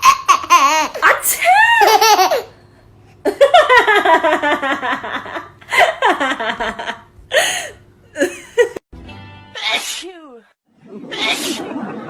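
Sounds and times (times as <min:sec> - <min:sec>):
baby laughing: 0:00.0 - 0:01.1, 0:01.8 - 0:02.5.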